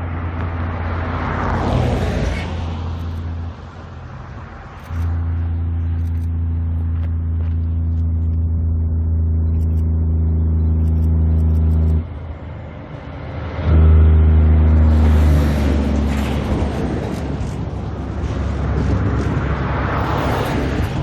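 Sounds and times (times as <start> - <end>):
truck diesel engine pulling hard: 10.8 - 21.0.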